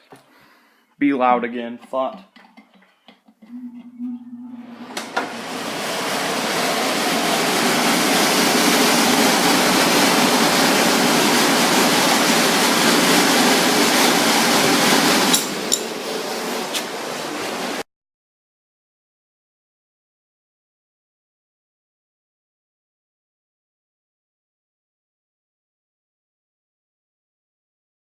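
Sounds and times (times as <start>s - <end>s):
power tool running: 4.7s - 17.8s.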